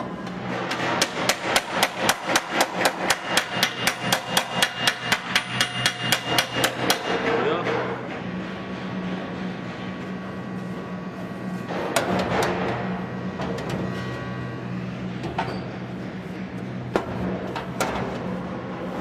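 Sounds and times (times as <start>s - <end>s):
steady low hum: 0.0s - 19.0s
sharp knocks on metal: 0.7s - 8.2s.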